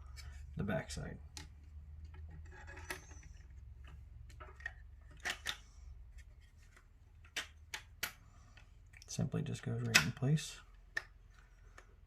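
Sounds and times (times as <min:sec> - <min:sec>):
plastic parts clicking: 0:01.3 - 0:05.8, 0:09.8 - 0:12.0.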